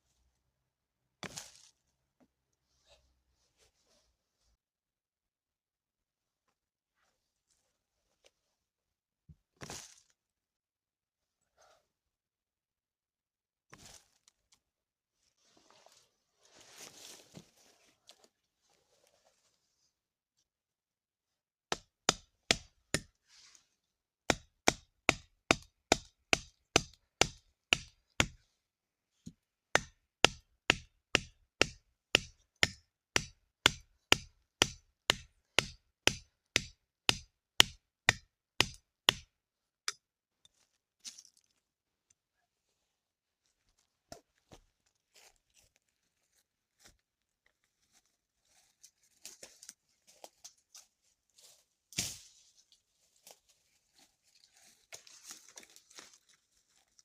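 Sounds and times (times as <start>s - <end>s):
sharp chopping strikes on wood: 21.7s - 23.1s, 24.3s - 28.4s, 29.8s - 39.3s.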